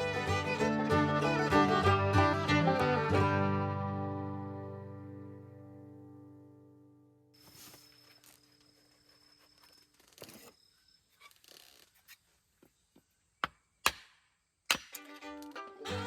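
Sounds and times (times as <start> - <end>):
faint rustling and handling: 7.4 - 13.2.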